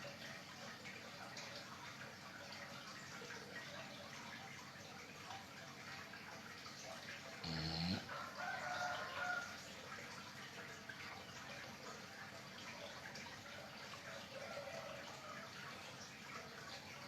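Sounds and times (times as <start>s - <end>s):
loud snorting snore: 7.4s - 8.1s.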